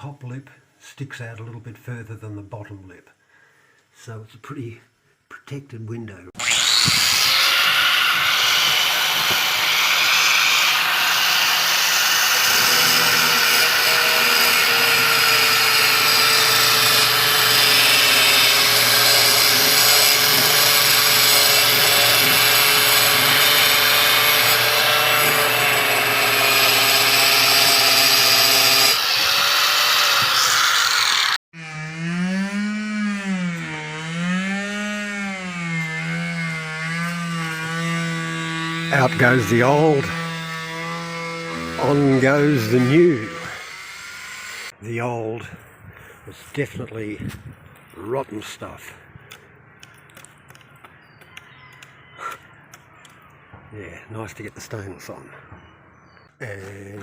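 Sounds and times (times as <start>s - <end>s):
electric power tool running: 6.4s - 44.7s.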